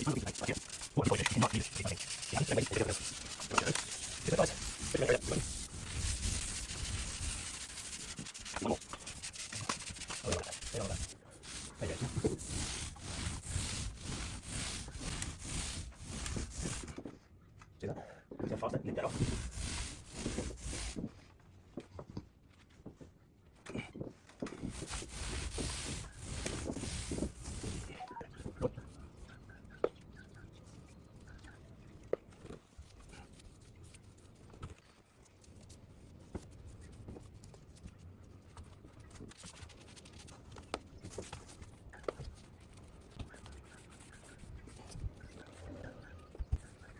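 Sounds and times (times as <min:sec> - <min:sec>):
tool rubbing on drywall: 0:00.0 - 0:17.1, 0:19.0 - 0:21.1, 0:24.5 - 0:30.4, 0:41.0 - 0:46.9.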